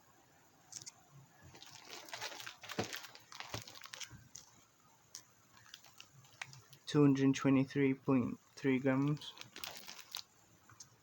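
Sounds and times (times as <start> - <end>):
box rustling in hands: 1.4 - 4.6, 5.5 - 6.8, 9.0 - 10.2.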